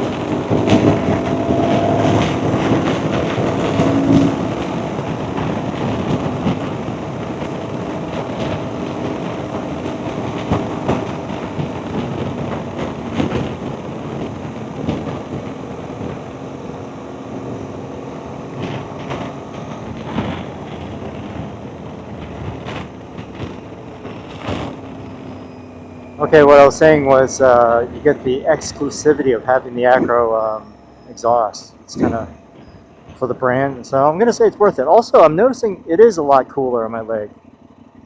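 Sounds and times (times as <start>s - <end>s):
wind rush: 0.0s - 35.8s
motorcycle engine riding: 0.0s - 38.0s
road rumble: 0.0s - 38.0s.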